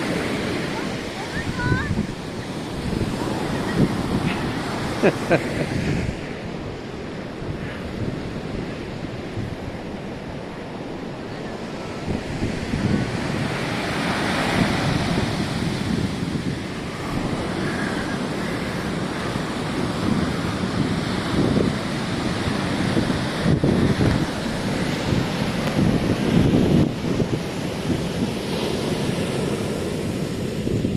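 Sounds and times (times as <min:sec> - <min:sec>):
ocean surf breaking: 0:00.0 - 0:30.9
wind buffeting microphone: 0:00.0 - 0:30.9.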